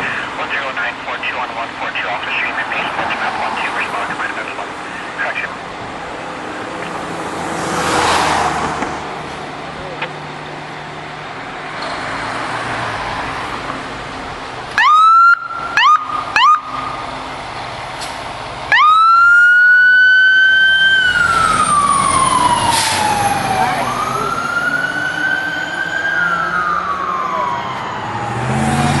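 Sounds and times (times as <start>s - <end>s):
fire engine siren: 0.0s - 5.7s, 14.7s - 17.9s, 18.5s - 29.0s
vehicle and road noise: 0.0s - 29.0s.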